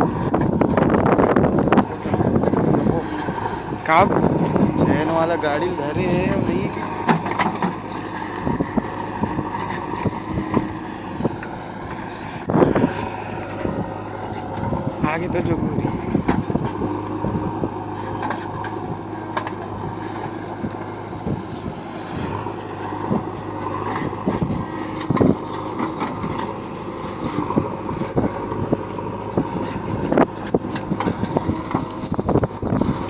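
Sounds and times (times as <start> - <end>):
diesel engine running: 0.0 - 33.0
knocks and clanks: 6.8 - 12.0, 15.8 - 17.2.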